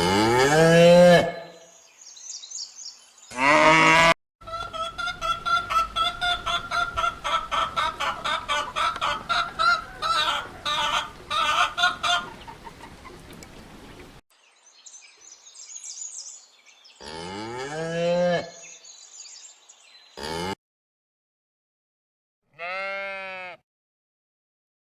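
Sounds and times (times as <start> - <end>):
cow mooing: 0.0 - 1.6, 3.3 - 4.2, 17.0 - 18.6, 20.2 - 20.6, 22.6 - 23.6
chickens clucking: 4.4 - 14.2.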